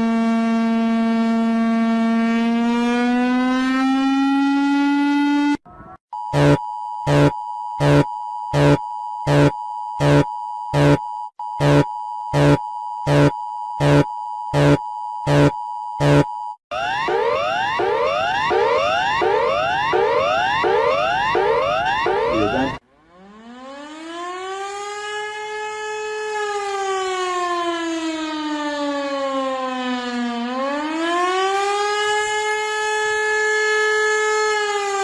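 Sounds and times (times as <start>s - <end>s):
loud pulsing beep: 6.2s - 16.4s, 17.0s - 22.8s
two-tone drone: 8.6s - 10.2s, 10.8s - 11.0s, 11.6s - 14.0s, 14.6s - 16.2s, 16.8s - 22.8s
rising electronic sweeps: 16.8s - 22.8s
buzzy rising electronic tone: 16.9s - 22.8s.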